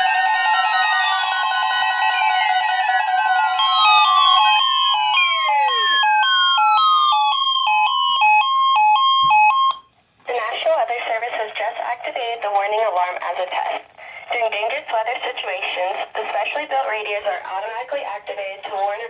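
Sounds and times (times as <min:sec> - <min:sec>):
steady high alarm tone: 0:00.0 - 0:09.9.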